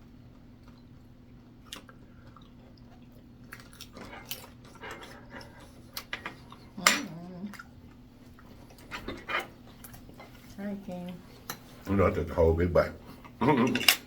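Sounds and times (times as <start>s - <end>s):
person chewing food: 0.0s - 6.8s.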